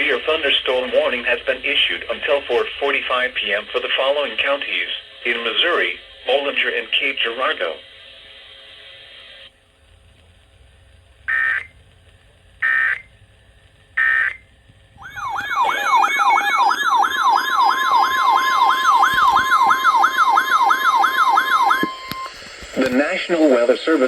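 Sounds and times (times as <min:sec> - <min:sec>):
steady alert tone: 0:15.0 - 0:22.1
warbling alert tone: 0:15.0 - 0:22.3
electronic data bursts: 0:15.0 - 0:24.0.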